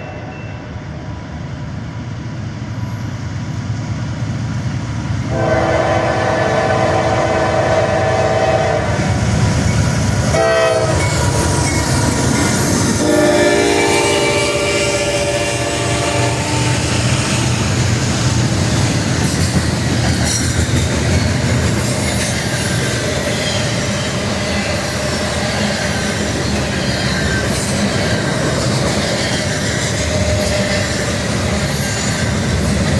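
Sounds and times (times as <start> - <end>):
train rumble and wheel clatter: 0.0 - 32.9
train air horn blasts: 5.3 - 9.2, 10.3 - 12.1, 13.0 - 17.3.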